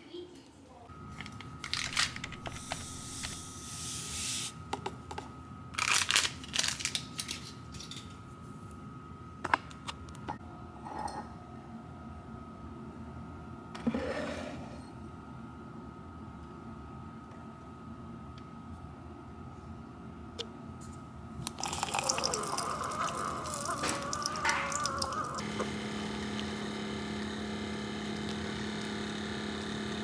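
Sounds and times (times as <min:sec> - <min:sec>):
objects clicking and rustling: 0:01.1 - 0:02.9.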